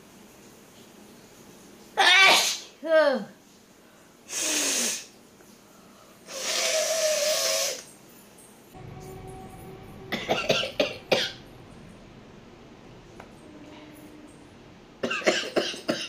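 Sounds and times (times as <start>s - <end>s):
woman blowing her nose: 4.3s - 5.1s, 6.3s - 7.8s.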